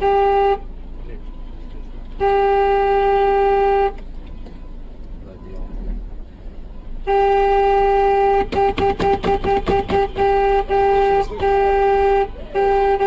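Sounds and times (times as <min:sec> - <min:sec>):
horn blasts and toots: 0:00.0 - 0:00.8, 0:02.2 - 0:04.1, 0:07.0 - 0:13.0.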